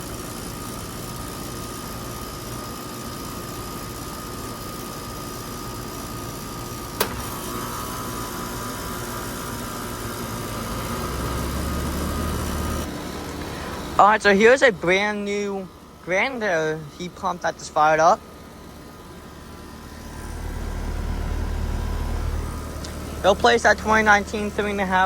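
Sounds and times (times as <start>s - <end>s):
heat pump humming: 0.0s - 25.0s
compressor click: 7.0s - 7.5s, 21.8s - 24.0s.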